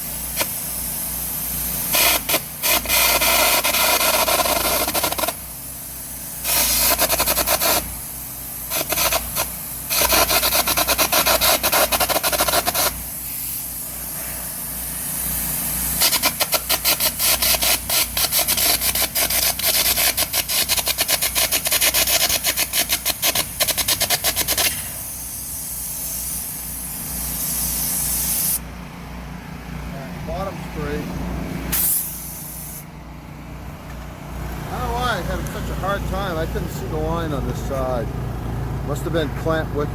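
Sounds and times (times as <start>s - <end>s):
welder engine humming: 0.0s - 39.9s
electric arc crackling: 8.7s - 13.0s.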